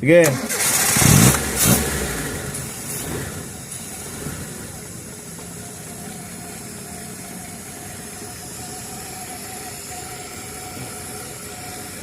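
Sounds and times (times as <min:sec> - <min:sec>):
engine idling: 0:00.2 - 0:12.0
faint steady whine: 0:03.8 - 0:12.0.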